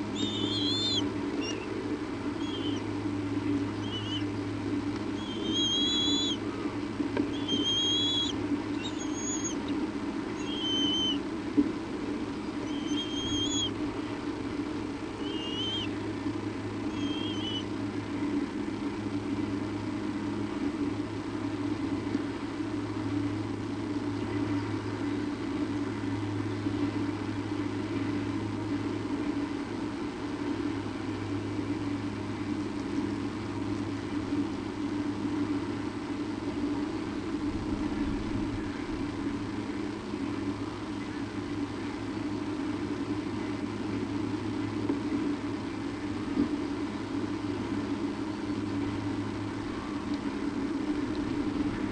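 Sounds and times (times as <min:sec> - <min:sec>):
high bird calls: 0:00.0 - 0:02.9, 0:03.6 - 0:04.5, 0:05.1 - 0:11.2, 0:12.5 - 0:13.8, 0:15.1 - 0:16.0, 0:16.8 - 0:17.7
steady low hum: 0:00.0 - 0:51.9.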